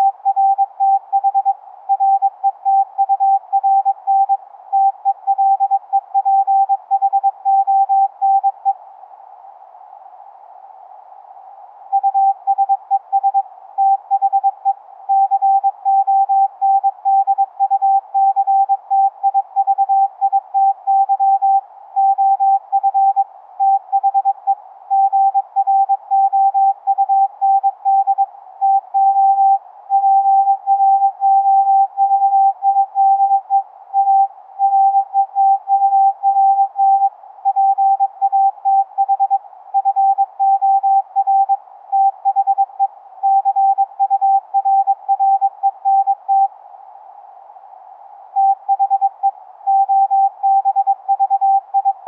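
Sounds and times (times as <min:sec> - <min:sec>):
faint steady hiss: 0:00.0 - 0:52.0
morse code beeps: 0:25.0 - 0:42.7, 0:43.3 - 0:46.5, 0:48.4 - 0:52.0.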